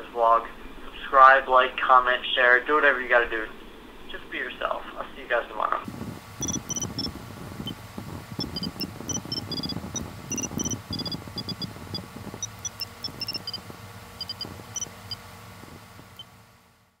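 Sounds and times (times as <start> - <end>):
short electronic beeps: 6.4 - 7.8, 8.4 - 13.6, 14.2 - 15.2.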